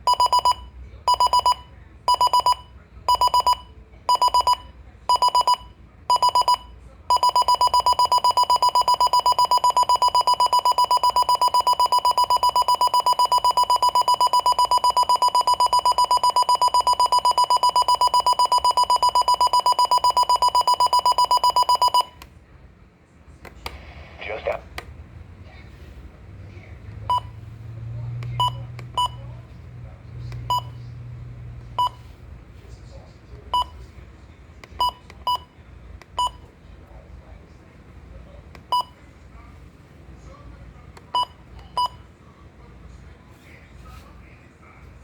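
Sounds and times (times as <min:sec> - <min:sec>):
rapid high alarm beeps: 0:00.0 - 0:22.2, 0:27.1 - 0:27.4, 0:28.4 - 0:29.2, 0:30.5 - 0:30.8, 0:31.8 - 0:32.1.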